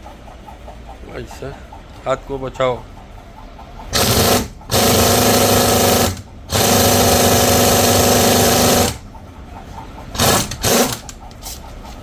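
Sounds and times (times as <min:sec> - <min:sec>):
pneumatic impact wrench hammering: 0:03.9 - 0:09.0, 0:10.1 - 0:11.2.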